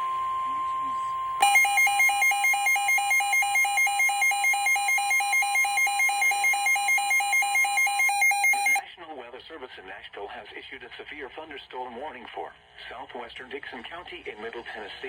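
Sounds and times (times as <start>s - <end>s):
steady warning tone: 0.0s - 8.8s
weather alert radio beeping: 0.0s - 8.8s.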